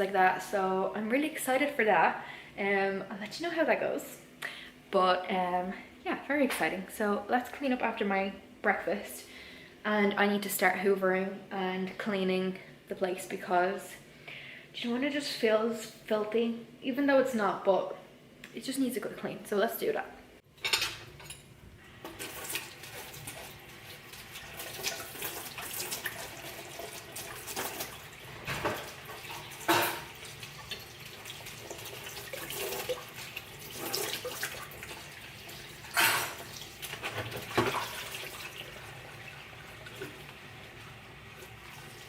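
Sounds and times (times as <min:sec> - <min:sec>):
dishes knocking and clinking: 0:29.6 - 0:30.2.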